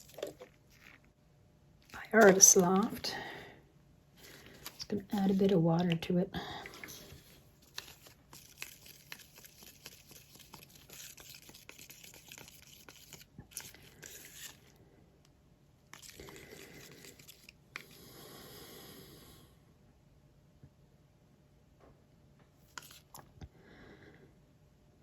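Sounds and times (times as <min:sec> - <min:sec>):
paint stirred in plastic cup: 0:00.0 - 0:01.1, 0:01.9 - 0:03.2, 0:04.2 - 0:14.7, 0:15.9 - 0:18.0, 0:22.7 - 0:23.3.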